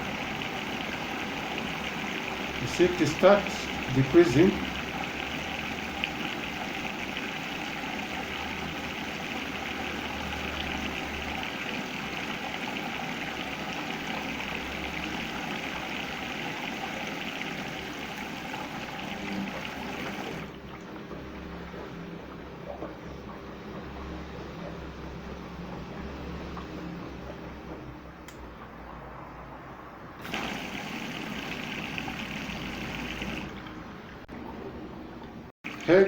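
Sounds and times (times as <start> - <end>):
washing machine filling with water: 0.0 - 28.8, 30.0 - 36.0.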